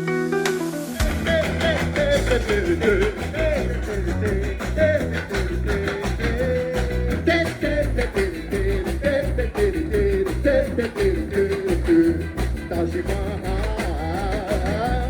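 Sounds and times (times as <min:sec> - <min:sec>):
instrumental band music: 0:00.0 - 0:10.4.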